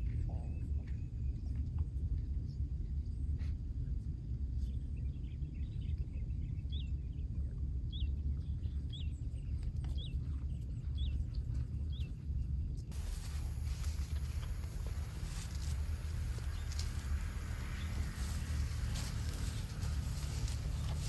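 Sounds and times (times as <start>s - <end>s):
low outdoor rumble: 0.0s - 21.0s
small bird chirping: 13.0s - 21.0s.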